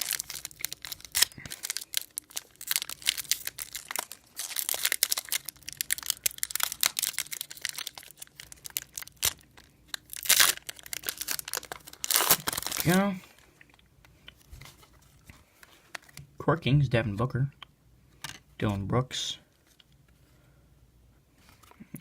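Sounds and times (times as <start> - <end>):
plastic wrappers crinkling and tearing: 0.0 - 16.2.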